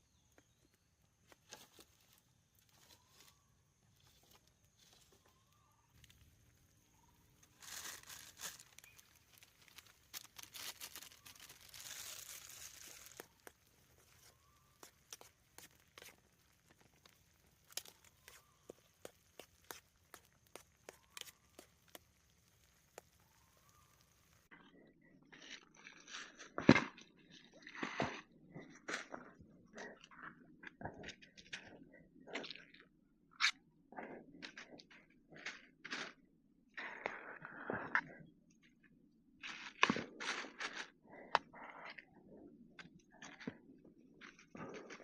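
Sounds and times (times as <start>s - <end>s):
rustling and crinkling: 0.4s - 32.8s, 39.4s - 45.0s.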